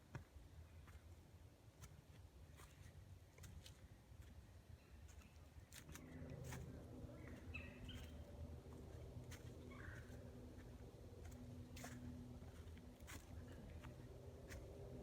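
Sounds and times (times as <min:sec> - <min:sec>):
faint low rumble: 0:00.2 - 0:15.0
faint hum: 0:00.4 - 0:15.0
bird chirps: 0:07.2 - 0:08.3, 0:09.4 - 0:10.2.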